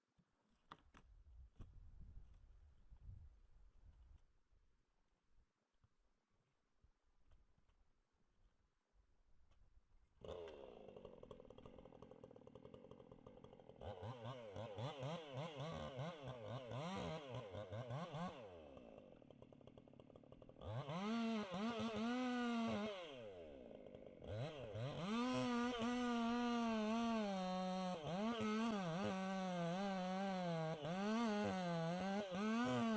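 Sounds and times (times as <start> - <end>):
chainsaw engine revving: 10.2 - 32.9.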